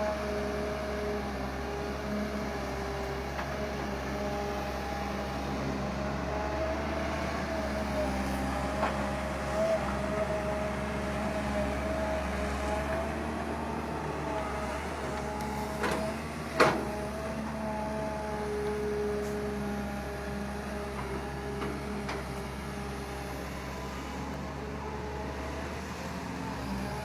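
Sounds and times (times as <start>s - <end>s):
excavator diesel engine digging: 0.1s - 27.0s.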